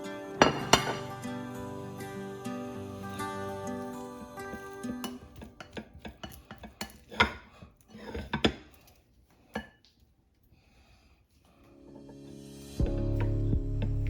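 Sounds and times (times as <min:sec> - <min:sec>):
dishes and cutlery clinking: 0:00.4 - 0:01.3, 0:03.2 - 0:09.9.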